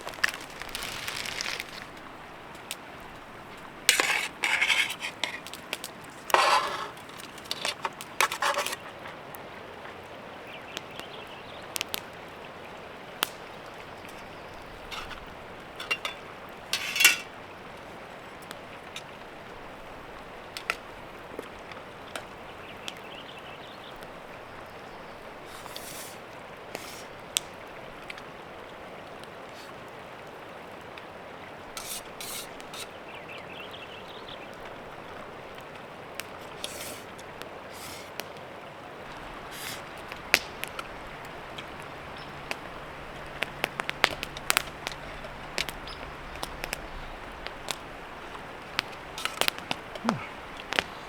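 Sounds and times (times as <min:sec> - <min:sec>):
faint steady hiss: 0:00.0 - 0:51.0
metal utensils clinking on cookware: 0:03.9 - 0:05.5, 0:06.3 - 0:08.8, 0:14.1 - 0:17.4.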